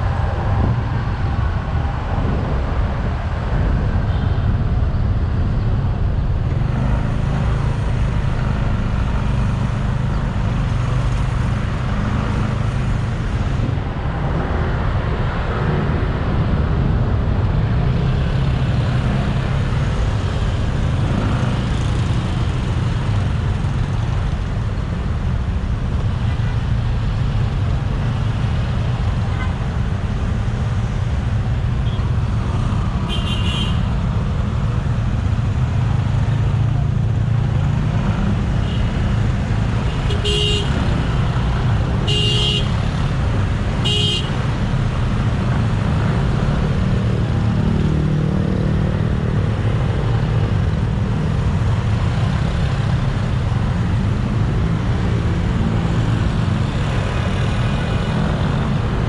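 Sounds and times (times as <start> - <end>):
wind: 0.0 - 59.0
vehicle horn beeps: 42.1 - 42.7.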